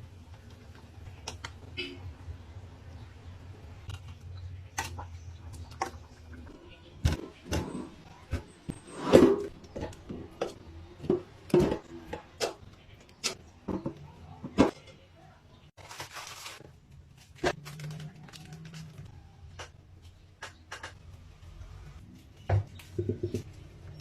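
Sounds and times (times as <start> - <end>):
kitchen utensils and dishes clattering: 4.7 - 15.1.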